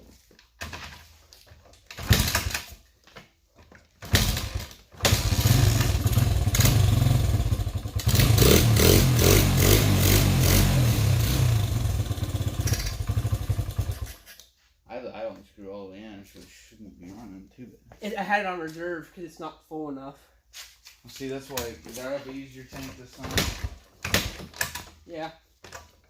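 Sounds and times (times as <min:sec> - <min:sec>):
small motorcycle engine starting and running: 0:04.1 - 0:14.3.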